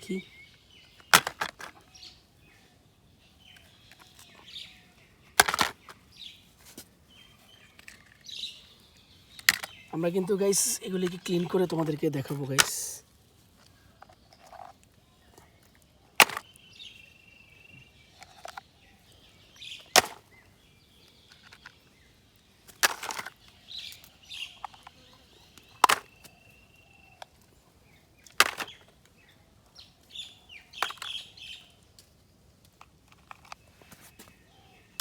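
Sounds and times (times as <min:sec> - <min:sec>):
birds chirping: 0:00.0 - 0:35.0
toys clacking into basket: 0:01.0 - 0:01.8, 0:05.4 - 0:06.0, 0:09.4 - 0:09.8, 0:10.5 - 0:13.0, 0:16.2 - 0:16.4, 0:22.7 - 0:23.4, 0:25.8 - 0:26.1, 0:28.3 - 0:28.9, 0:30.8 - 0:31.2.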